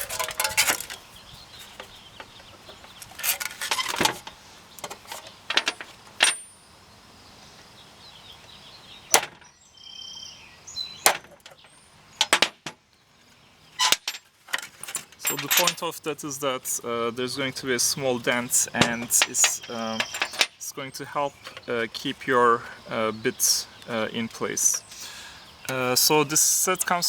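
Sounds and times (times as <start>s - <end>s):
metal tools clattering: 0.0s - 6.6s, 13.8s - 16.1s, 17.8s - 22.4s.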